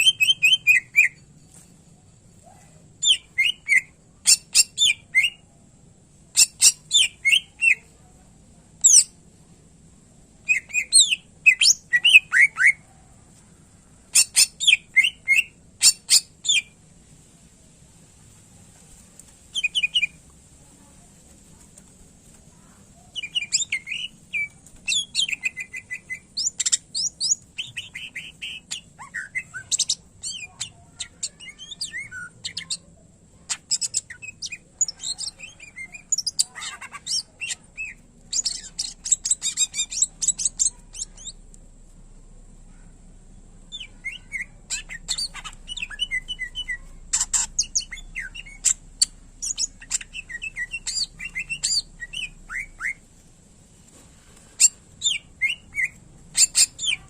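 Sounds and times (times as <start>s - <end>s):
bird singing chirps and trills: 0.0s - 1.3s, 3.0s - 5.5s, 10.5s - 12.8s, 14.1s - 16.7s, 19.5s - 20.2s, 22.6s - 32.9s, 33.5s - 41.4s, 43.7s - 53.0s, 54.6s - 57.0s.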